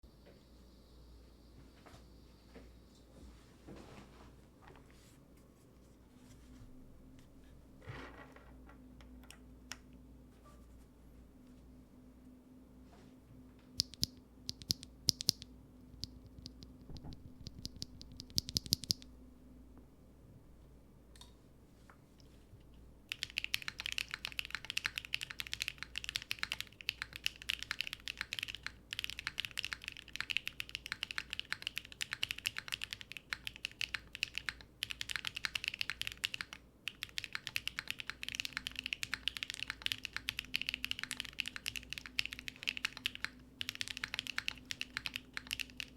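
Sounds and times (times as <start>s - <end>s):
mechanical keyboard typing: 13.8s - 19.1s, 23.1s - 45.9s.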